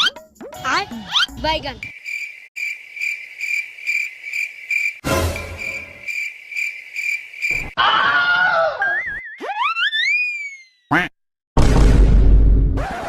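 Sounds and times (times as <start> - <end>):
cricket chirping: 1.8 - 7.8.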